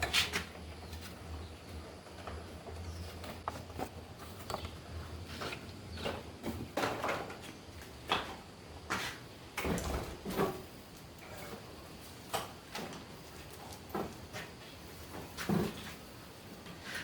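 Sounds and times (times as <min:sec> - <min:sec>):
clinks and scrapes of workshop objects: 0:08.9 - 0:17.0.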